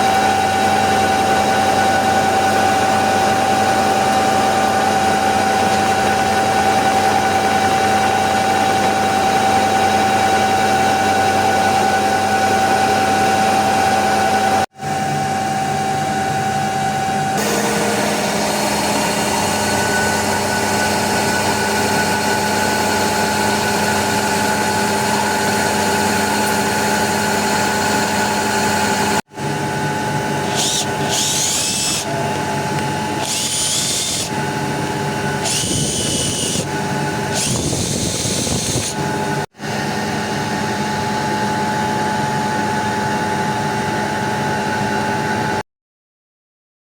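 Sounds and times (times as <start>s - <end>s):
milling machine spindle whine: 0.0s - 45.4s
cutting noise: 30.4s - 32.3s, 33.2s - 34.4s, 35.4s - 39.0s.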